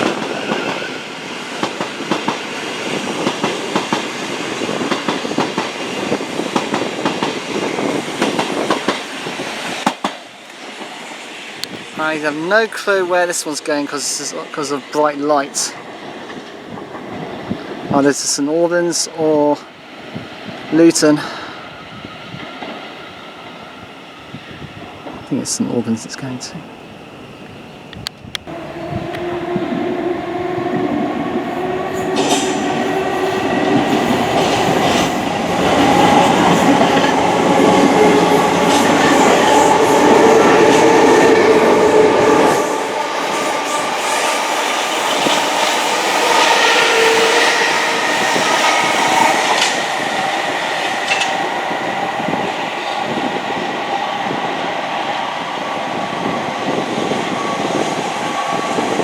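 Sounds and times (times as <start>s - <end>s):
train wheels clattering on rails: 0.0s - 11.0s, 28.5s - 59.0s.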